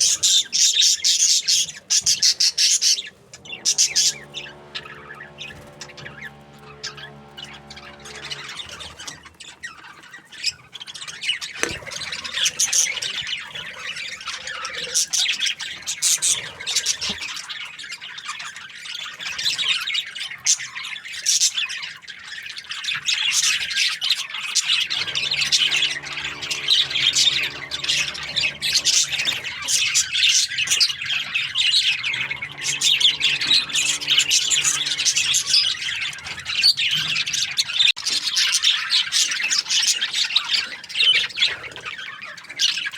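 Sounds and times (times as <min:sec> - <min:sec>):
budgerigars chattering and squawking: 0:00.0 - 0:42.9
low steady hum: 0:02.8 - 0:09.0, 0:24.8 - 0:36.6.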